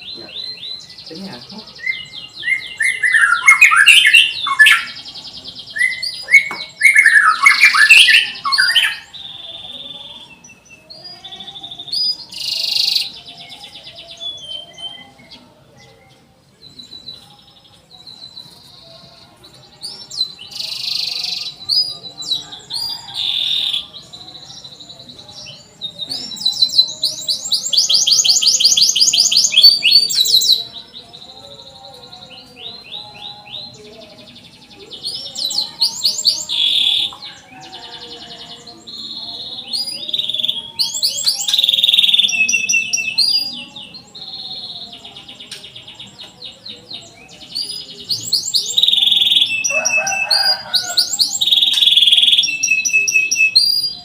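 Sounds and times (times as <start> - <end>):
canary singing: 0.0 - 54.0
canary fast rolling trill: 34.4 - 43.5, 47.5 - 54.0.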